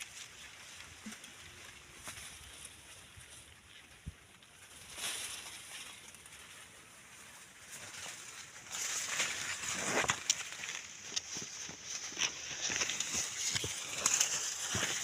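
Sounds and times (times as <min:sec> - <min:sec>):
maize leaves rustling and crunching: 0:00.0 - 0:15.0
sharp crackles: 0:07.8 - 0:15.0.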